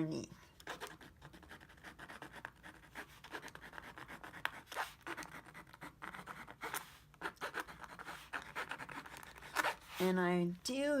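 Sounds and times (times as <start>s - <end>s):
paint pen scratching on canvas: 0.6s - 10.3s.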